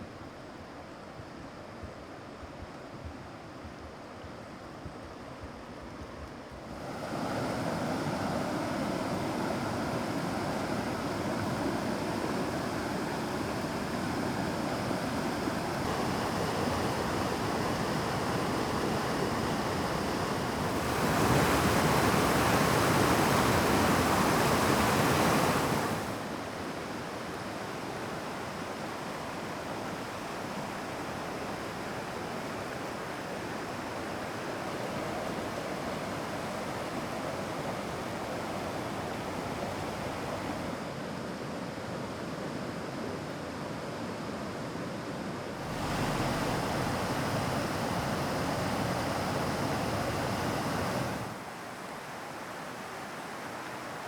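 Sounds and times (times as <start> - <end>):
stream and waterfall rushing: 6.8 - 40.8, 45.6 - 54.0.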